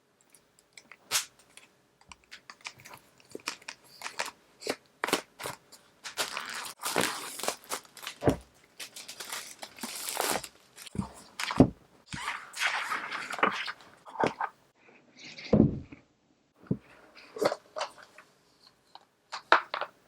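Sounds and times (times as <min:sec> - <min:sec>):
wrapping tearing and crinkling: 0:01.1 - 0:11.6.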